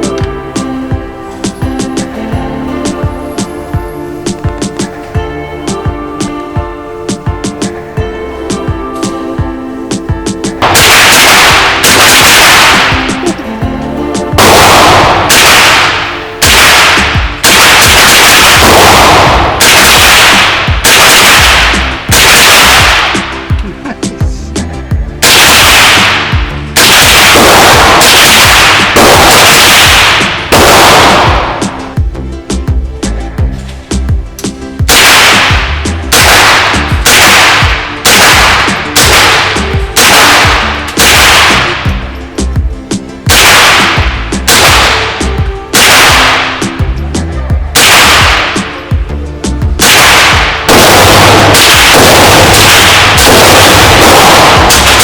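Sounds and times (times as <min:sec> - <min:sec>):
rifle shots: 0:10.6 - 0:13.5, 0:14.3 - 0:23.6, 0:25.2 - 0:31.9, 0:34.8 - 0:42.1, 0:43.3 - 0:46.9, 0:47.7 - 0:49.0, 0:49.8 - 0:55.0
gunshots with ringing tail: 0:10.6 - 0:13.7, 0:14.3 - 0:23.6, 0:25.2 - 0:32.0, 0:34.8 - 0:42.3, 0:43.2 - 0:49.1, 0:49.8 - 0:55.0.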